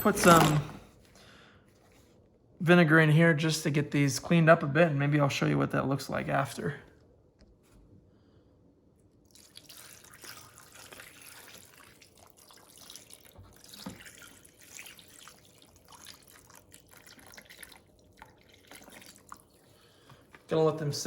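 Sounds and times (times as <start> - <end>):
liquid splashing and trickling: 9.2 - 20.4
small drips: 9.2 - 20.5.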